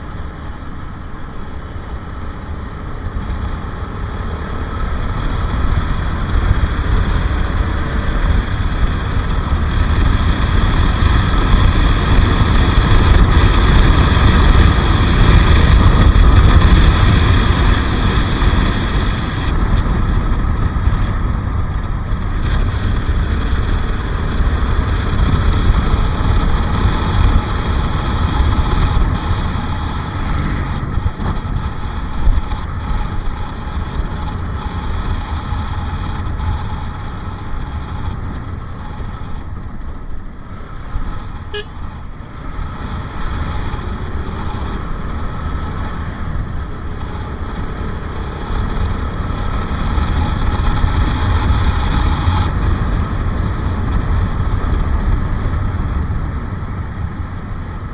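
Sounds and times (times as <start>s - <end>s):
motorcycle engine running: 0.0s - 57.9s
wind rumble on microphone: 0.0s - 57.9s.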